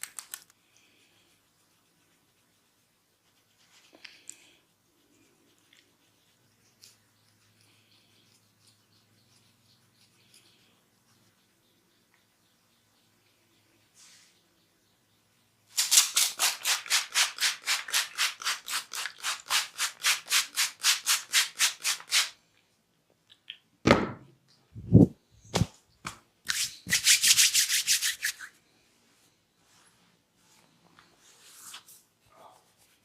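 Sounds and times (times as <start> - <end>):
hands rubbing over hair: 26.5 - 28.5.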